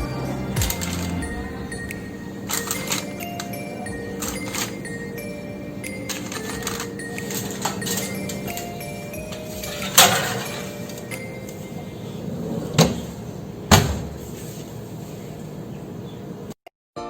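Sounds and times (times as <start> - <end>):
soft background music: 0.0 - 13.2.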